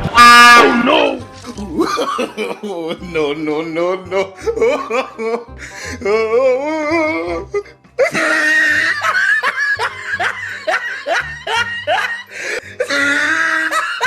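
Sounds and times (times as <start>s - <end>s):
laughter: 1.7s - 3.0s, 4.4s - 5.4s, 8.0s - 14.0s.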